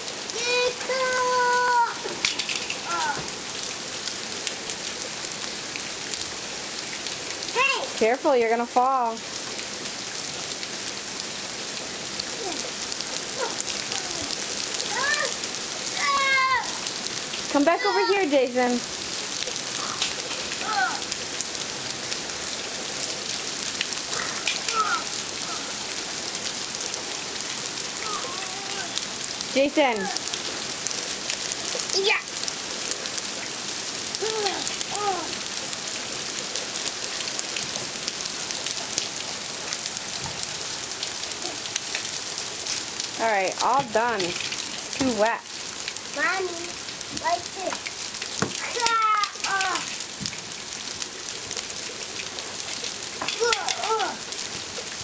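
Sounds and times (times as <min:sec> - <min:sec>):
rain pouring: 0:00.0 - 0:55.0
child calling: 0:00.3 - 0:02.2, 0:02.8 - 0:03.3, 0:07.6 - 0:08.0, 0:12.4 - 0:12.7, 0:13.3 - 0:16.9, 0:17.6 - 0:18.4, 0:19.8 - 0:21.2, 0:24.1 - 0:25.8, 0:28.0 - 0:29.1, 0:29.8 - 0:30.4, 0:31.9 - 0:32.3, 0:34.2 - 0:35.4, 0:41.4 - 0:41.7, 0:46.2 - 0:47.8, 0:48.6 - 0:50.0, 0:53.3 - 0:54.3.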